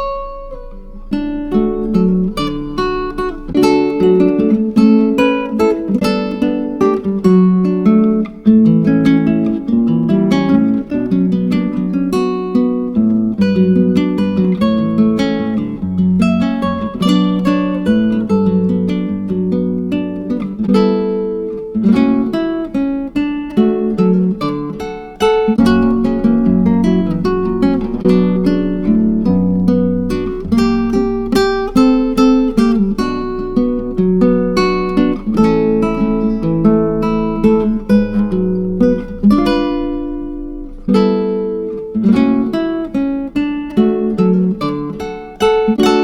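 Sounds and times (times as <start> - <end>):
acoustic guitar melody: 0.0 - 46.0.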